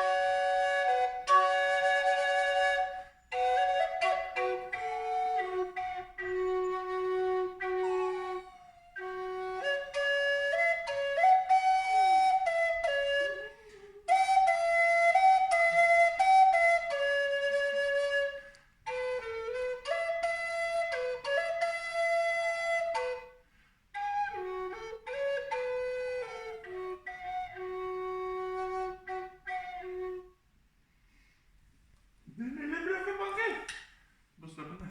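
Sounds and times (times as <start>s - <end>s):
flute melody: 0.0s - 30.5s
dog howling: 4.8s - 9.8s, 13.0s - 14.3s.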